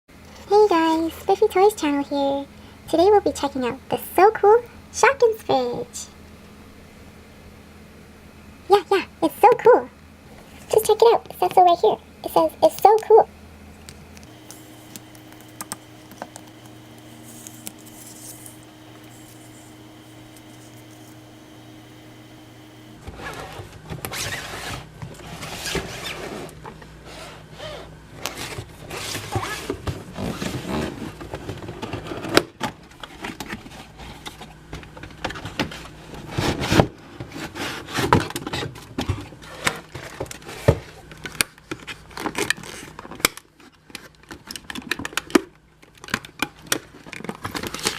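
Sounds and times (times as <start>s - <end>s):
low steady hum: 0.2s - 32.2s
plastic toy and packaging handled: 28.3s - 47.9s.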